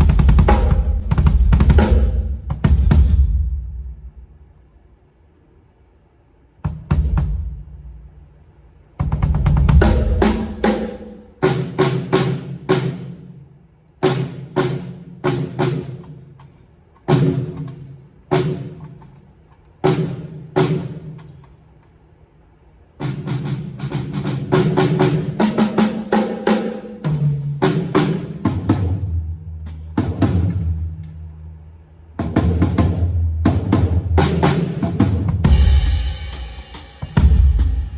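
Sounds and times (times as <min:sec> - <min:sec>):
drum kit fills: 0:00.0 - 0:04.6, 0:06.5 - 0:21.7, 0:23.0 - 0:37.9.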